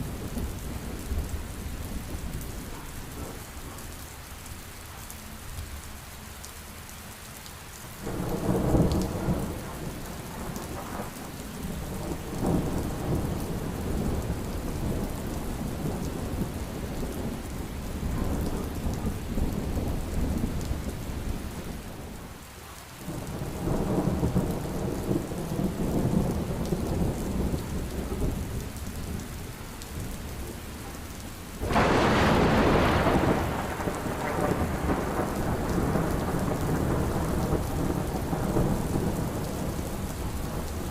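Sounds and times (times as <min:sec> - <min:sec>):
heavy rain: 0:00.0 - 0:40.9
thunder rolling: 0:31.6 - 0:40.9.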